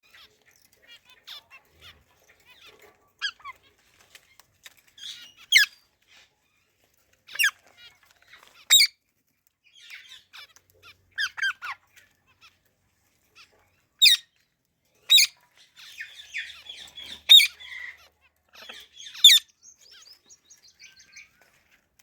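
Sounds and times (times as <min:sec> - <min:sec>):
parrot chirps and squeaks: 0:00.1 - 0:06.7, 0:07.3 - 0:09.0, 0:09.7 - 0:12.6, 0:13.3 - 0:14.4, 0:15.0 - 0:21.5
parrots screeching: 0:08.7 - 0:08.9, 0:11.1 - 0:11.8, 0:15.1 - 0:19.5.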